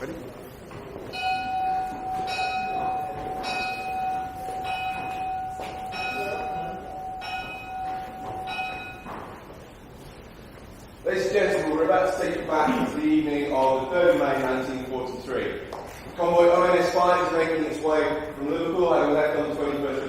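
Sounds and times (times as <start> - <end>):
bell-like ringing: 1.1 - 9.6
steady high tone: 1.2 - 9.3.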